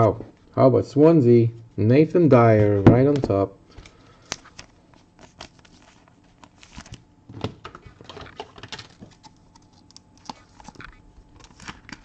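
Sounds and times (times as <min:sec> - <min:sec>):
cards clicking and rustling: 0:03.1 - 0:12.0.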